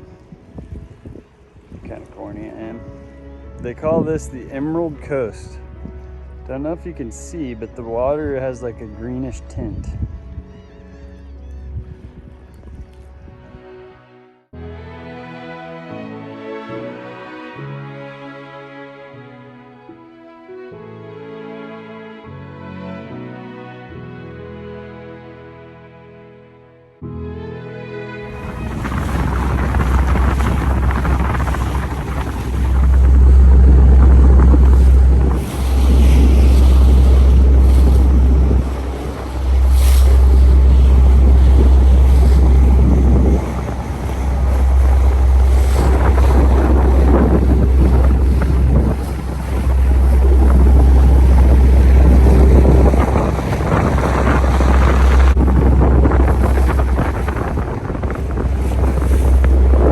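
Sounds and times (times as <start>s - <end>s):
wind buffeting microphone: 0.0s - 13.9s, 28.2s - 59.9s
rushing water: 27.3s - 59.9s.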